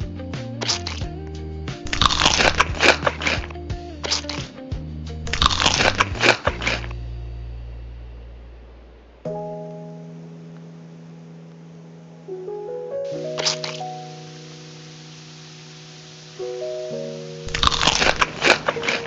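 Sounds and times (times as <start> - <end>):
background music: 0.0 - 8.0, 9.3 - 19.0
crunchy food being chewed: 0.6 - 1.1, 1.9 - 4.4, 5.3 - 7.0, 13.4 - 13.8, 17.5 - 19.0.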